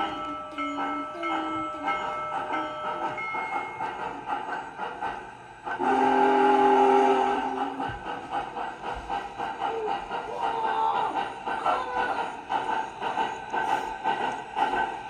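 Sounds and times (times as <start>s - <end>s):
model train running: 0.0s - 15.0s
train horn blast: 5.8s - 7.8s.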